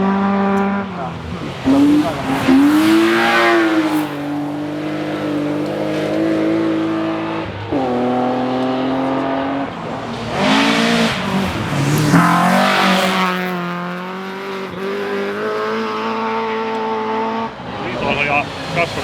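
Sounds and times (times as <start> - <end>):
rally car engine at high revs: 0.0 - 19.0.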